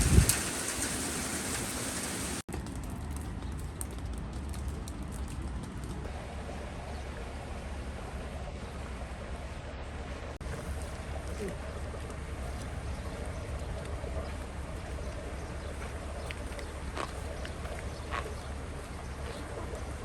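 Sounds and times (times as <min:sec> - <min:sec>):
steady rain falling: 0:00.0 - 0:03.0.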